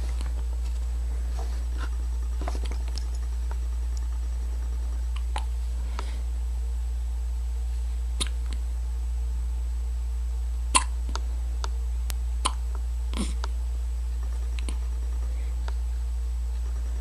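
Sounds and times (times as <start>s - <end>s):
steady low hum: 0.0s - 17.0s
person hiccuping: 8.2s - 8.5s, 10.7s - 11.0s, 12.4s - 13.5s.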